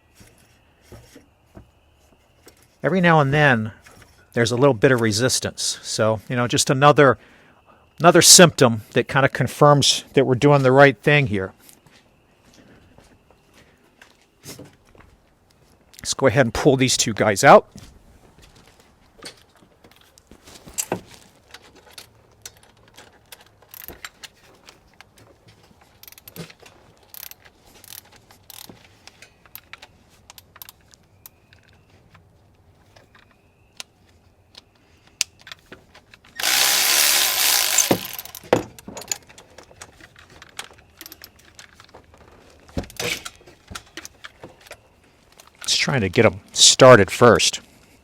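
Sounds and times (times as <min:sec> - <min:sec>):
ratchet clicking: 0:36.4 - 0:38.5.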